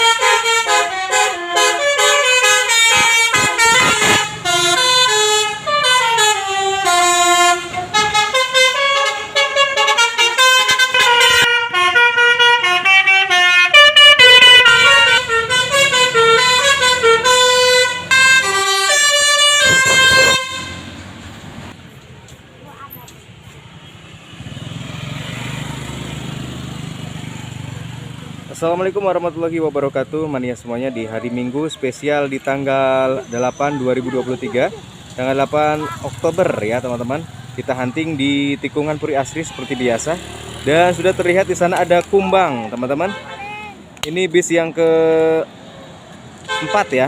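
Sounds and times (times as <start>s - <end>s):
bus horn playing a fast melody: 0.0s - 21.0s, 42.9s - 43.8s, 46.4s - 47.0s.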